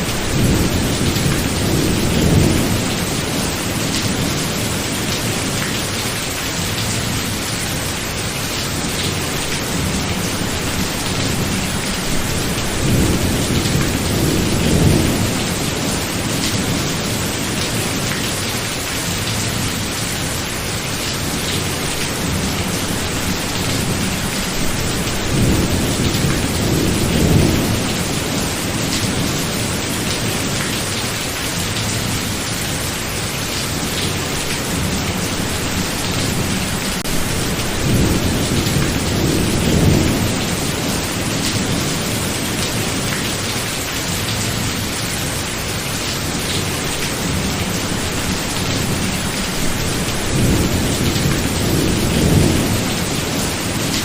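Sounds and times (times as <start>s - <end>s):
heavy rain: 0.0s - 54.0s
thunder rumbling: 8.8s - 18.0s, 33.9s - 43.1s, 46.3s - 54.0s.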